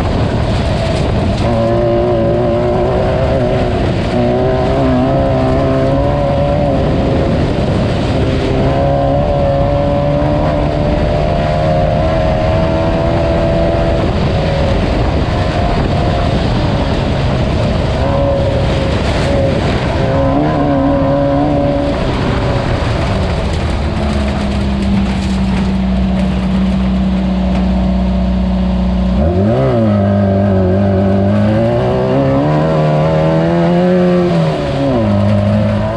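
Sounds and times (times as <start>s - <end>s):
car driving over rough ground: 0.0s - 35.9s
race car engine running hard: 0.0s - 35.9s.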